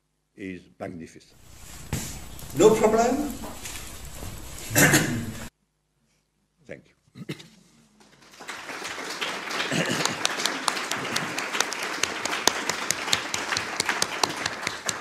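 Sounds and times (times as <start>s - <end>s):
audience applauding: 1.4s - 5.5s, 8.0s - 15.0s.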